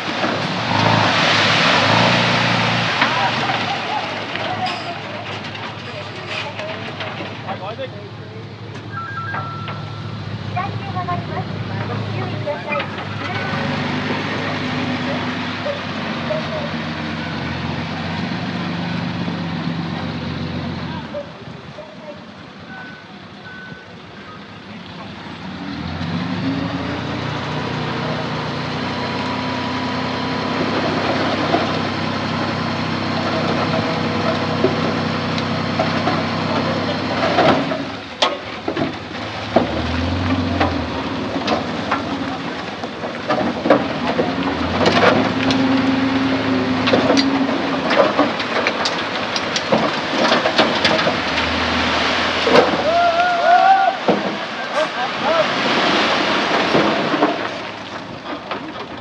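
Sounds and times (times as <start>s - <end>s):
heavy diesel engine revving: 0.0s - 8.9s, 9.6s - 21.1s, 24.9s - 38.2s, 39.0s - 53.0s
metal clanks and knocks: 4.3s - 8.0s, 35.7s - 52.8s.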